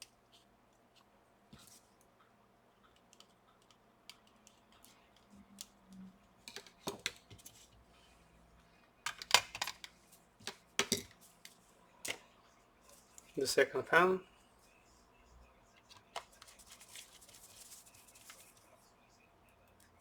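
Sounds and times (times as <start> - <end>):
laptop parts clicking and tapping: 2.8 - 7.8, 9.0 - 12.2, 15.9 - 18.6.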